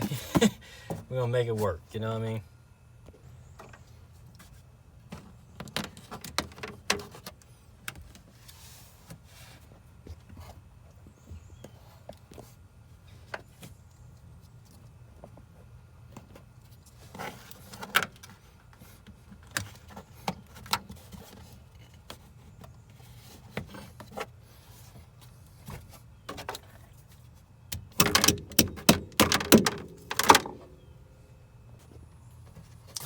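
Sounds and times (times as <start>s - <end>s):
tools and parts clicking: 27.7s - 30.7s
rattling knocks: 27.8s - 30.7s.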